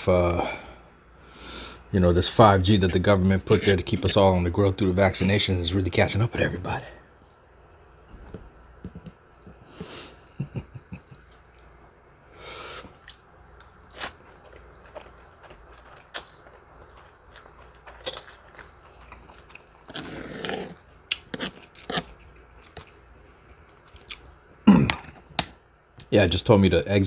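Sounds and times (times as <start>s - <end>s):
person chewing food: 11.0s - 11.8s, 12.8s - 25.5s.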